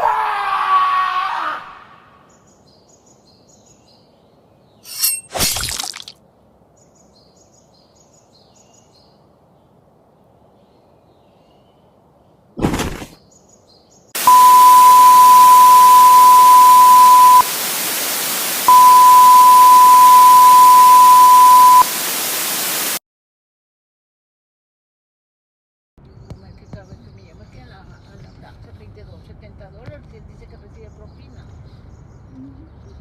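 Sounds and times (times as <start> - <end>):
high beep tone: 14.2 - 17.5, 18.6 - 21.9
loud static hiss: 14.2 - 23.0.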